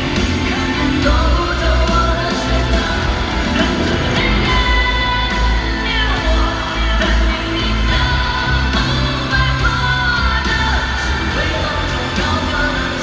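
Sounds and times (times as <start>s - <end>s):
live rock band with heavy bass: 0.0s - 13.0s
man singing: 0.0s - 13.0s.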